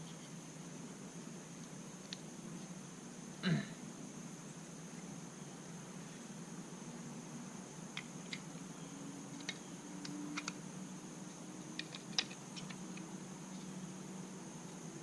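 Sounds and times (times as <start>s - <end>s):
faint steady hum: 0.0s - 15.0s
plastic parts clicking and tapping: 11.8s - 13.0s.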